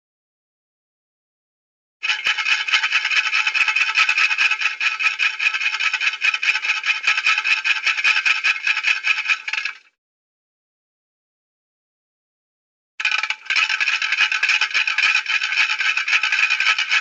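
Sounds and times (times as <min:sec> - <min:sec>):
rasping rattling scrape: 0:02.0 - 0:09.9, 0:13.0 - 0:17.0.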